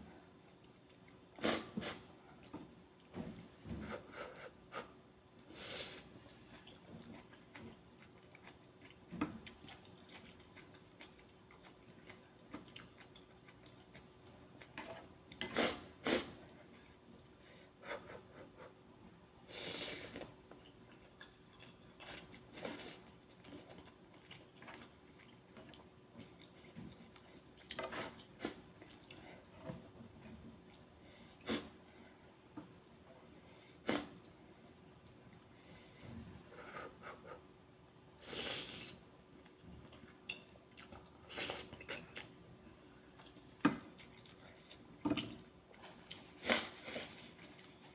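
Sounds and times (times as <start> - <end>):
quiet chewing: 0.1 - 3.6, 4.9 - 17.5, 20.0 - 36.2, 38.7 - 47.9
sniffs: 1.4 - 2.1, 3.8 - 6.2, 15.4 - 16.4, 19.5 - 20.3, 27.8 - 28.6, 31.0 - 31.8, 38.2 - 39.0, 41.3 - 41.7, 46.4 - 47.4.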